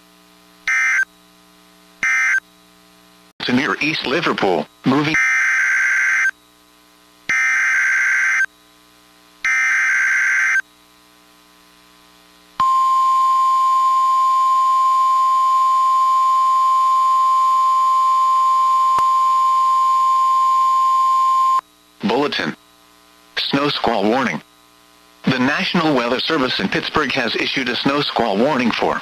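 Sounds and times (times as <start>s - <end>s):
harsh digital data bursts: 0.7s - 1.1s, 2.0s - 2.4s, 4.5s - 6.4s, 7.3s - 8.5s, 9.4s - 10.6s
steady warning alarm tone: 0.7s - 1.1s, 2.0s - 2.4s, 4.9s - 6.4s, 7.3s - 8.5s, 9.4s - 10.7s, 12.6s - 21.6s.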